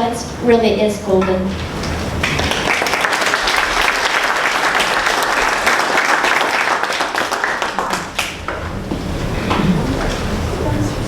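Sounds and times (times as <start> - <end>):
audience applauding: 1.9 - 10.5.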